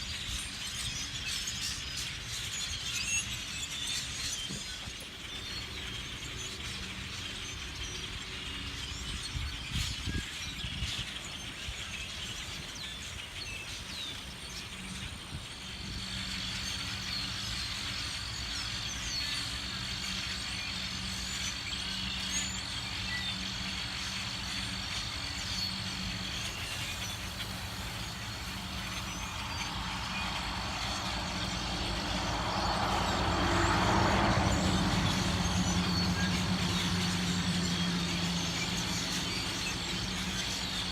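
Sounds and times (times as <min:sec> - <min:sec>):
flock of birds chattering: 0:00.0 - 0:40.9
vehicle passing: 0:22.9 - 0:40.9.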